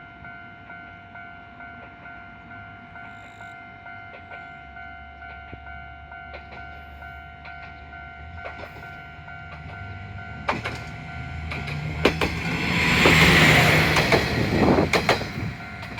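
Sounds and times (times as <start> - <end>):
level crossing warning bell: 0.0 - 12.7, 13.6 - 15.9
diesel railcar engine rumbling: 0.0 - 15.9
train wheels clacking over rail joints: 6.3 - 6.8, 7.4 - 15.9.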